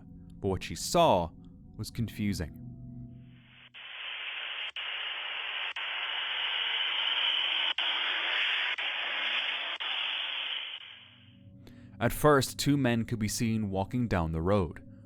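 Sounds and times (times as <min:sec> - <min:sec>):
steady audio hiss: 0:03.4 - 0:11.3.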